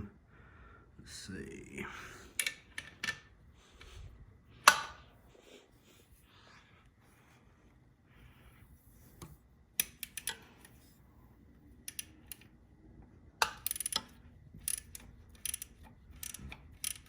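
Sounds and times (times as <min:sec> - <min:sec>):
metallic wrench clicks and clinks: 0:11.9 - 0:12.4, 0:13.4 - 0:17.0.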